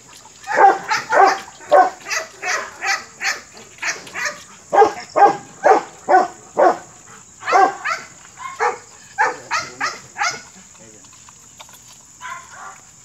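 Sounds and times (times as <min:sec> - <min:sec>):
dog barking: 0:00.4 - 0:10.5, 0:12.2 - 0:12.8.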